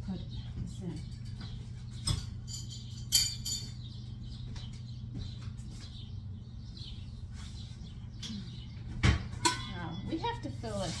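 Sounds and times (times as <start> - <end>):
metal pot clanking: 9.4 - 9.9.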